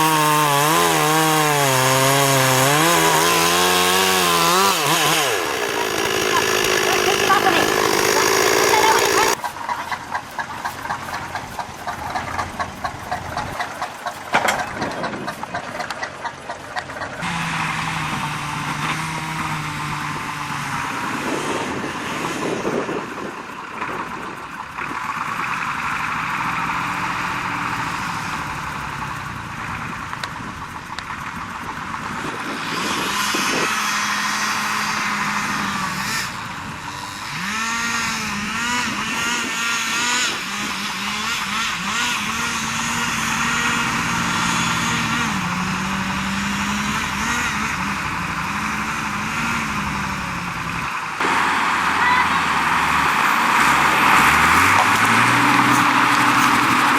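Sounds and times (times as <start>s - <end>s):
engines revving: 0.0s - 9.4s, 16.7s - 56.9s
fast even ticking: 4.5s - 9.4s.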